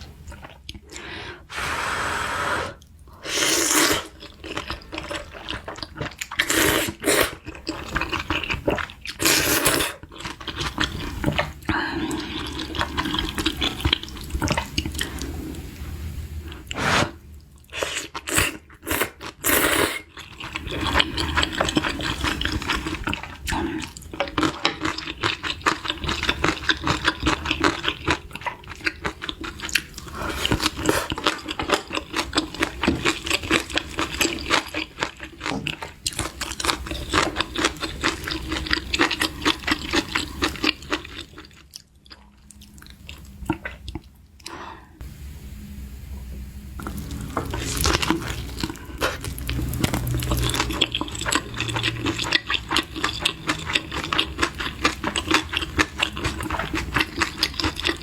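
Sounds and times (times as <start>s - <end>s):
slurping noodles: 6.3s - 15.6s, 16.6s - 24.0s
wet chewing: 17.6s - 44.5s, 46.8s - 58.0s.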